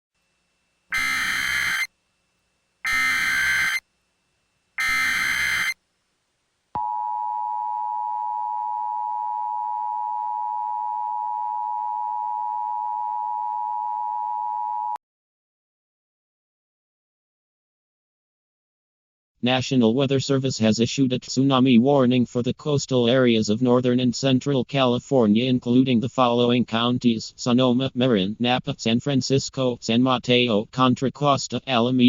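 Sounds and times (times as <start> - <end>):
digital data tones: 0.9 - 1.9, 2.9 - 3.8, 4.8 - 5.8
two-tone attention signal: 0.9 - 1.9, 2.9 - 3.8, 4.8 - 5.8.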